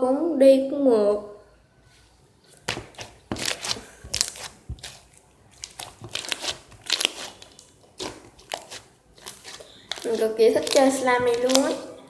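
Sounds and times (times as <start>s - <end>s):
slime squeezed with crackling pops: 5.6s - 11.8s.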